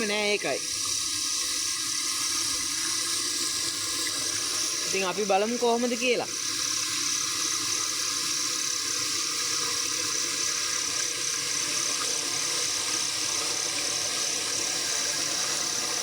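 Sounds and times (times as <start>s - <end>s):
night insect chorus: 7.2s - 16.0s.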